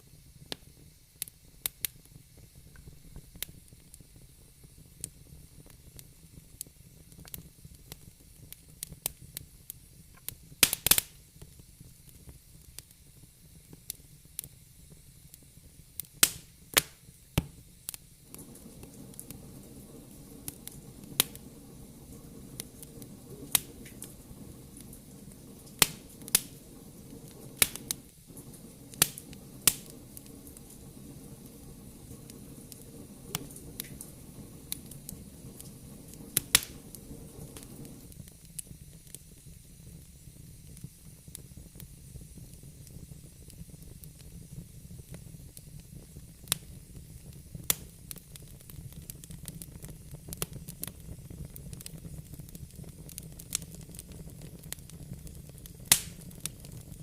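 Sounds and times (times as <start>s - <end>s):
wood fire crackling and popping: 0.0s - 57.0s.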